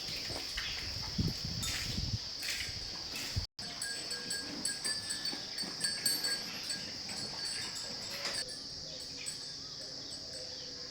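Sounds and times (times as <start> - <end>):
cattle knocking and shuffling: 0.0 - 8.4.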